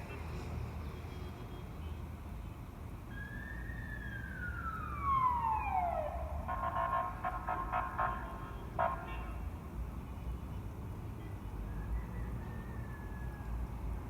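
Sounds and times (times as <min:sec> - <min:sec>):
electronic siren: 0:03.3 - 0:09.0.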